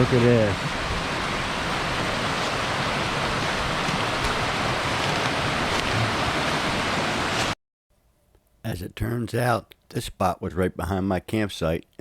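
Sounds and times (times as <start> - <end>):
waterfall rushing: 0.0 - 7.6.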